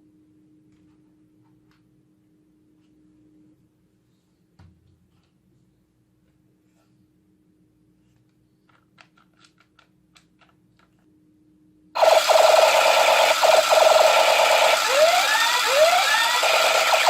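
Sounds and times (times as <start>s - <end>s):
toy rifle automatic gunfire effect: 12.0s - 17.0s.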